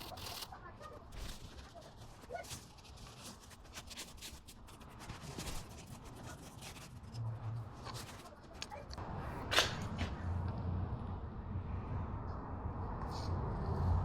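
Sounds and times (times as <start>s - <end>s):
faint rubbing and scratching: 0.0s - 8.9s.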